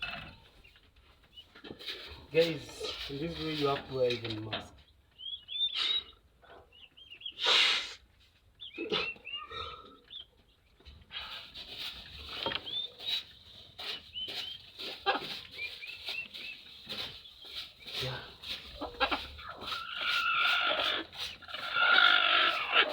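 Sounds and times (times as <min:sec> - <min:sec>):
rustling and scraping: 0:00.0 - 0:05.3, 0:10.4 - 0:22.9
chicks peeping: 0:04.8 - 0:07.4, 0:08.5 - 0:10.8, 0:11.6 - 0:22.9.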